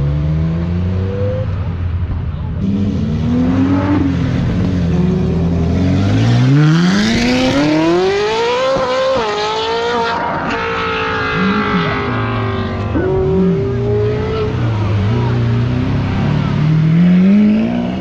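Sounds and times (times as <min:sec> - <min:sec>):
car engine revving hard: 0:02.6 - 0:18.0.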